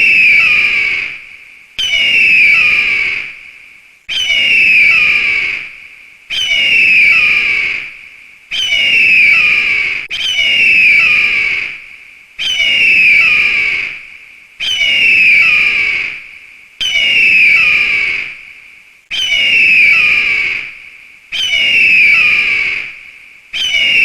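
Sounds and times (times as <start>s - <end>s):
eagle screaming: 0.0s - 1.2s, 1.8s - 3.3s, 4.1s - 5.7s, 6.3s - 7.9s, 8.5s - 11.8s, 12.4s - 14.0s, 14.6s - 16.2s, 16.8s - 18.4s, 19.1s - 20.7s, 21.4s - 23.0s, 23.6s - 24.0s.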